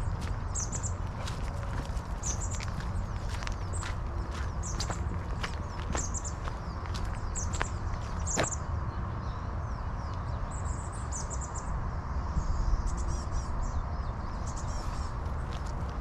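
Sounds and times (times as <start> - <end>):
steady low rumble: 0.0 - 11.0, 11.6 - 16.0
songbirds chirping: 0.0 - 16.0.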